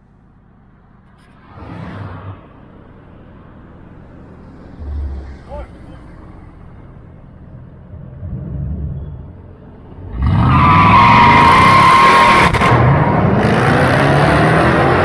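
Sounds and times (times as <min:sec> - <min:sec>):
car engine revving: 0:07.8 - 0:15.0
tires squealing in a burnout: 0:10.1 - 0:15.0.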